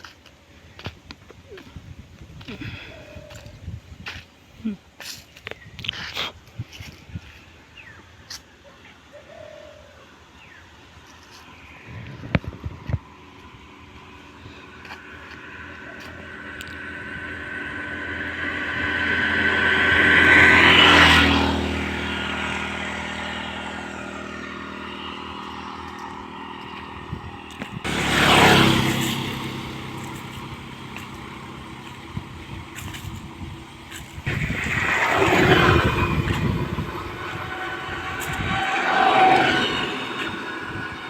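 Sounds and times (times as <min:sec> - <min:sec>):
motor vehicles passing by: 0:09.0 - 0:41.0
engine whine: 0:10.4 - 0:41.0.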